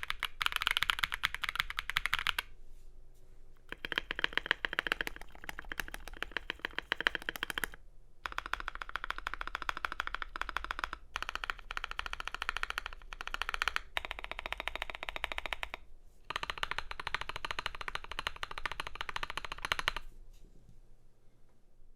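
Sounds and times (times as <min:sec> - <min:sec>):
fast typing on mechanical keyboard: 0:00.0 - 0:02.5, 0:03.7 - 0:20.1.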